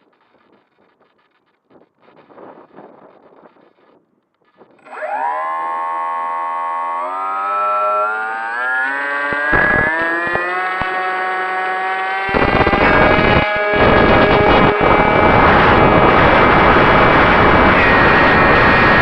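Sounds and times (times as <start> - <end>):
electric motor whining: 4.8 - 19.0
wind buffeting microphone: 11.8 - 19.0.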